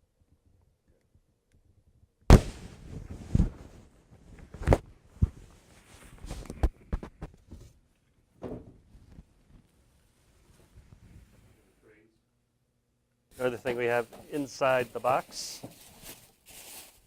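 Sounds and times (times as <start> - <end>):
packaging rustling and scraping: 13.4 - 17.0.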